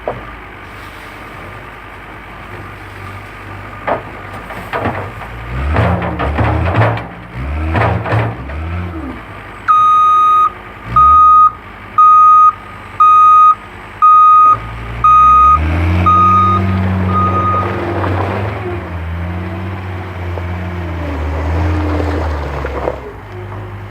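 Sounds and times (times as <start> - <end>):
diesel engine running: 0.0 - 23.9
backup alarm beeping: 9.7 - 17.9.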